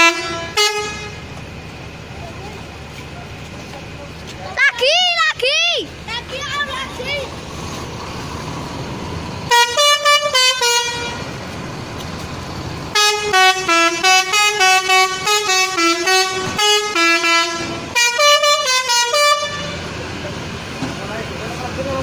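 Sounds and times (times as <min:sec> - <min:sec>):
bus air horn playing tune: 0:00.0 - 0:01.3, 0:09.5 - 0:11.4, 0:12.9 - 0:20.0.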